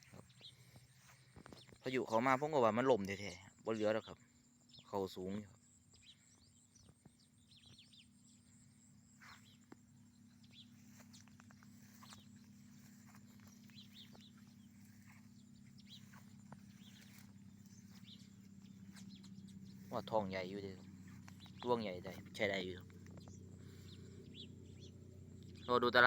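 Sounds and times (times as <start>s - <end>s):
faint small bird chirps: 0.0s - 26.0s
steady low hum: 5.4s - 26.0s.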